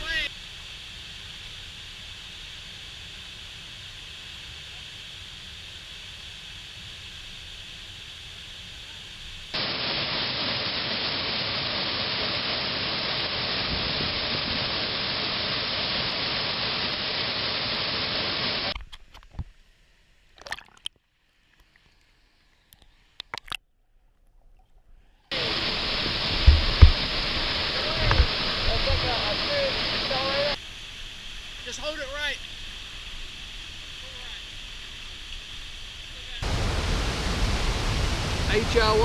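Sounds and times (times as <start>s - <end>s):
waterfall roaring: 8.6s - 18.7s, 25.3s - 30.8s, 33.8s - 39.0s.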